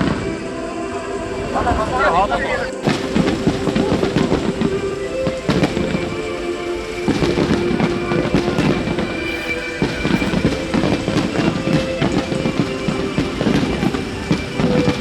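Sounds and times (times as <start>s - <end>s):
music playing: 9.1s - 10.6s.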